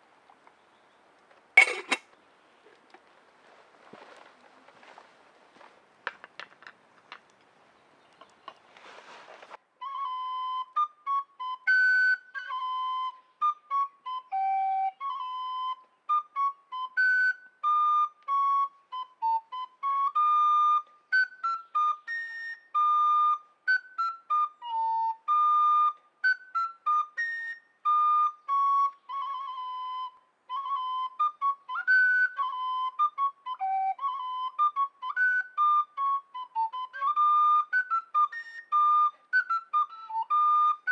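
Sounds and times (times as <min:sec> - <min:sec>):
faint hiss: 0:06.8 - 0:10.6
solo flute melody: 0:08.1 - 0:40.9.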